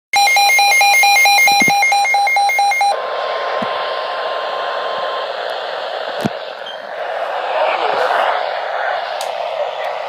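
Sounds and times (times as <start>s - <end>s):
rapid electronic warning beeps: 0.2s - 3.0s.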